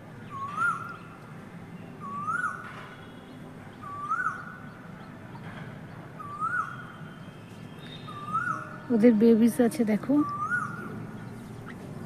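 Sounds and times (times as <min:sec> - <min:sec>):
bird calling: 0:00.2 - 0:01.2, 0:02.0 - 0:03.2, 0:03.8 - 0:04.8, 0:06.2 - 0:09.0, 0:10.0 - 0:12.0.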